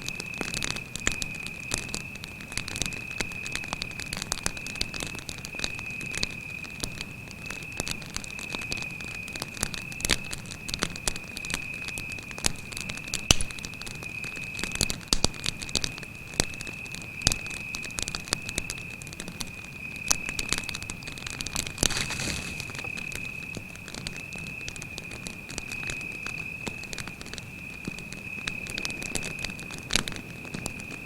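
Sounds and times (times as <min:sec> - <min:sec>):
campfire crackling and popping: 0:00.0 - 0:31.0
cricket trilling: 0:00.0 - 0:31.0
fire hiss: 0:19.8 - 0:27.6.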